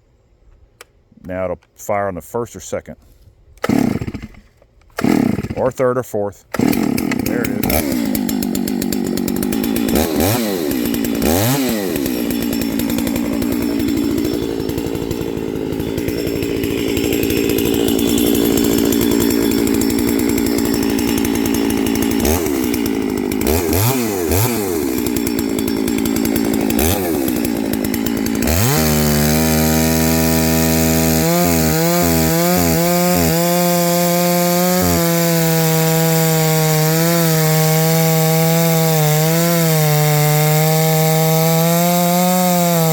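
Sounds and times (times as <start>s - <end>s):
chainsaw cutting wood: 3.6s - 42.9s
chainsaw idling and revving: 3.6s - 42.9s.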